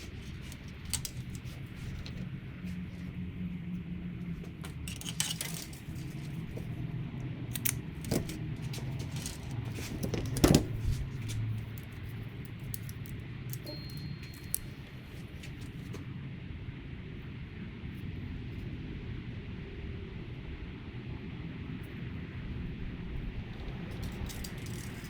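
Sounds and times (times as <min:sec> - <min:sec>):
steady low hum: 0:00.0 - 0:25.0
small hard objects clicking: 0:11.6 - 0:14.8.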